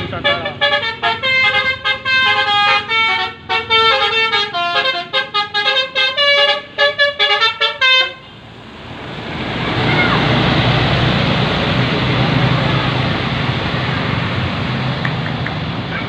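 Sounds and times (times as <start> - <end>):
multi-tone bus air horn tune: 0.0 - 8.4.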